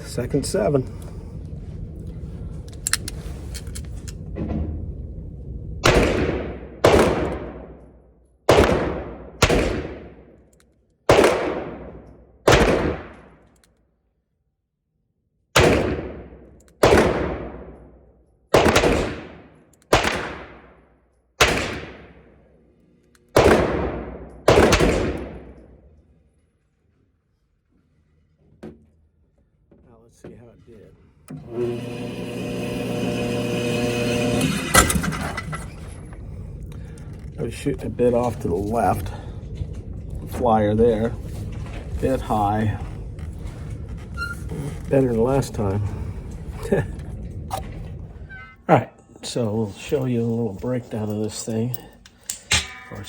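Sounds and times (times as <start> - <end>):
revolver gunshots: 5.8 - 10.5, 11.1 - 13.4, 15.6 - 22.5, 23.3 - 25.8.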